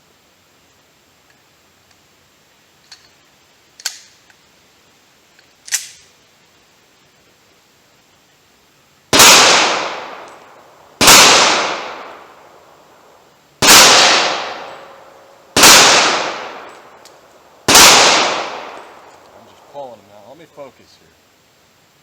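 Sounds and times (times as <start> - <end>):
pistol shots echoing: 9.2 - 10.4, 11.0 - 12.4, 13.6 - 17.0, 17.7 - 19.3.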